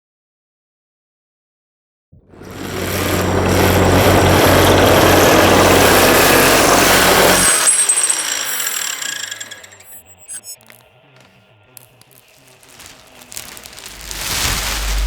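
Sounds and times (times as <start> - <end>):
loud machine noise with hum: 2.2 - 10.4.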